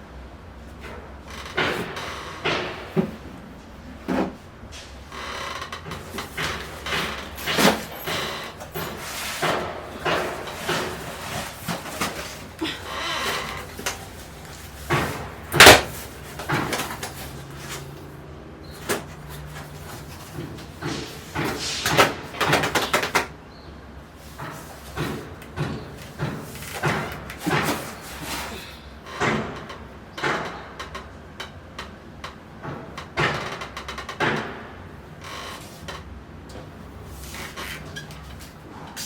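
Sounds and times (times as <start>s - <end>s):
containers knocking on fridge shelves: 0.8s - 4.4s, 5.8s - 18.1s, 18.8s - 23.3s, 24.2s - 28.6s.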